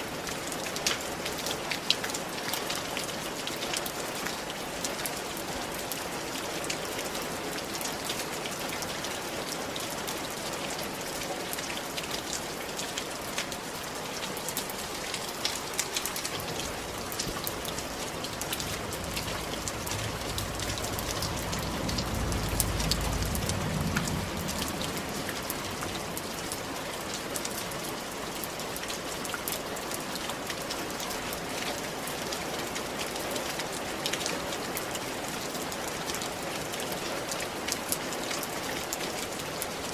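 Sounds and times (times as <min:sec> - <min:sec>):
rain on roof tiles: 0:00.0 - 0:39.9
low rumble: 0:16.9 - 0:26.6.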